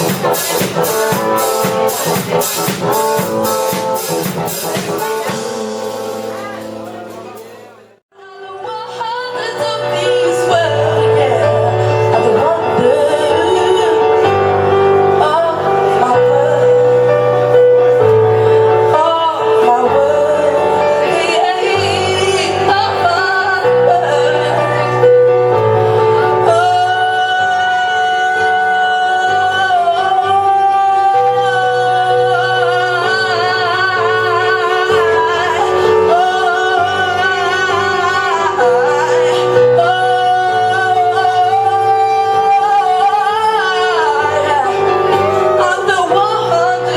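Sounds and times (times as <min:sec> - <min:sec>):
live band playing groove music: 0:00.0 - 0:08.0
person singing: 0:00.0 - 0:46.9.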